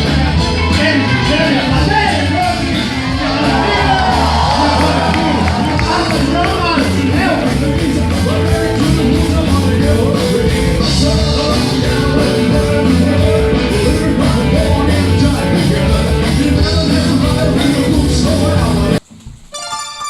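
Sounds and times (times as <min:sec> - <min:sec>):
drum kit beat: 0:00.0 - 0:19.8
rock and roll band playing: 0:00.0 - 0:20.0.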